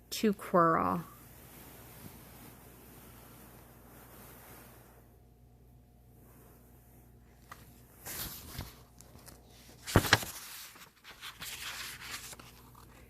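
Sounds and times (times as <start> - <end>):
rustling and handling noises: 6.1 - 13.0.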